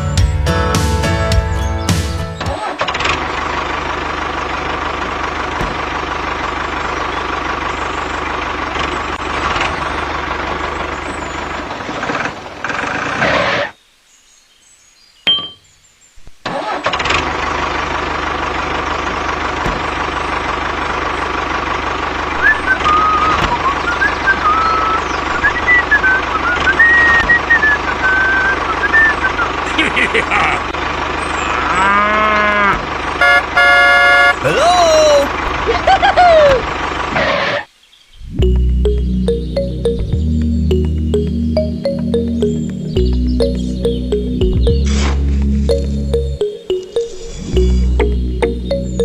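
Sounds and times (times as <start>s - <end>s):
vehicle engine running: 0.0s - 13.6s, 16.2s - 49.0s
wavering high tone: 45.6s - 49.0s.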